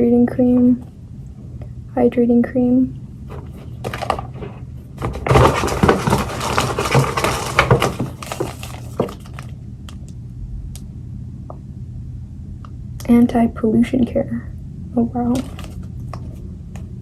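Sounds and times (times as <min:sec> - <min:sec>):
packaging rustling: 0:03.2 - 0:10.0, 0:15.3 - 0:16.9.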